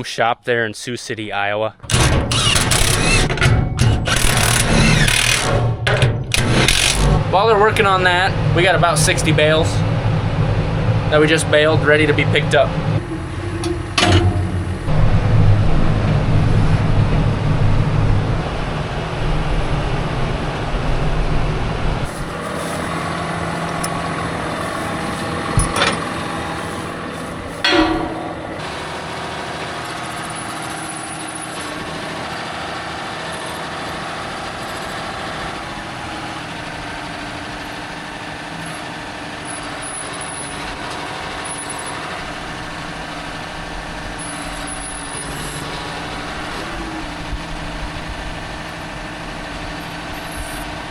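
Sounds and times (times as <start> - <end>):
tractor engine running: 1.8 - 50.9
short metal clanks: 13.0 - 15.0, 25.4 - 30.0.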